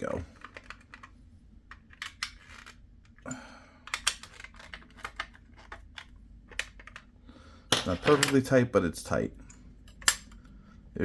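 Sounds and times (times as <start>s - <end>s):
plastic and metal parts clicking: 0.3s - 1.1s, 1.7s - 3.2s, 3.8s - 7.1s.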